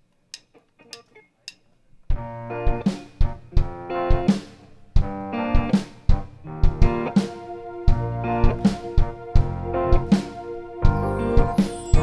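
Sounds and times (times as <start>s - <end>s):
drum kit kick and cymbal: 5.8s - 12.0s
live band playing pop ballad: 8.3s - 12.0s.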